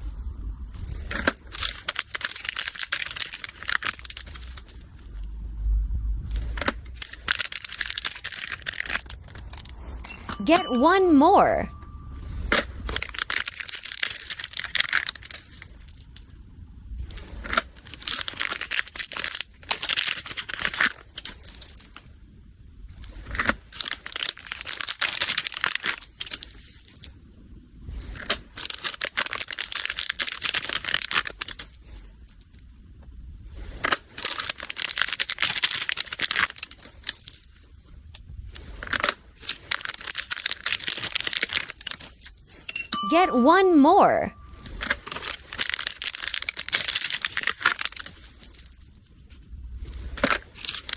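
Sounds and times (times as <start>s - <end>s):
plastic bags crinkling: 1.5s - 5.1s, 7.0s - 9.7s, 13.0s - 15.7s, 17.9s - 20.8s, 23.8s - 26.0s, 34.3s - 37.2s, 39.6s - 42.1s, 45.0s - 48.8s.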